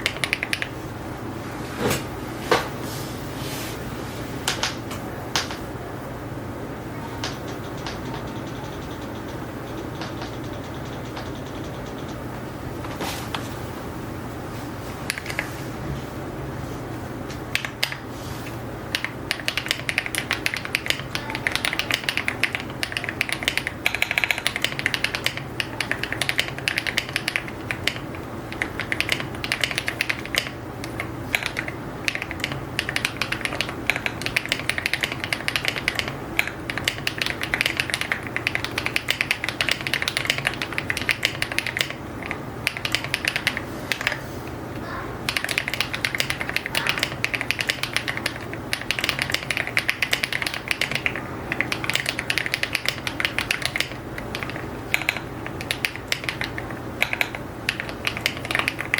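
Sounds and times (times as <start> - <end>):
fast mechanical keyboard typing: 0.0 - 0.8, 7.2 - 12.2, 15.1 - 15.5, 17.5 - 18.0, 18.9 - 44.2, 45.3 - 58.9
steady low hum: 0.0 - 58.9.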